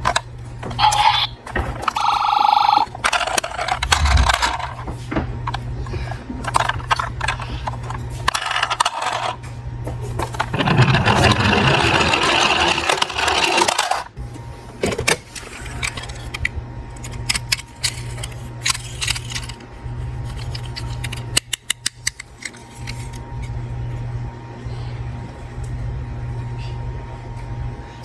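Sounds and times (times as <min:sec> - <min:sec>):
steady low hum: 0:00.0 - 0:28.0
metal toy cars clattering: 0:03.0 - 0:04.8, 0:06.4 - 0:09.4, 0:10.2 - 0:14.1.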